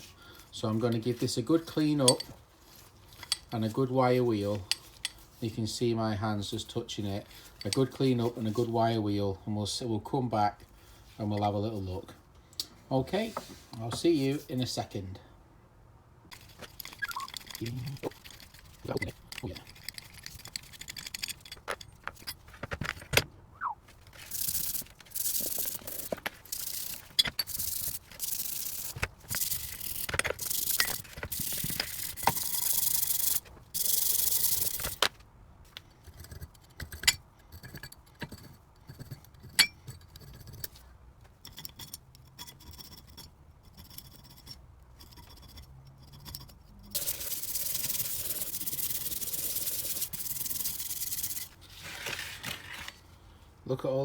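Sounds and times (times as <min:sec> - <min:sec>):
scrubbing and scraping metal: 0:16.3 - 0:23.1.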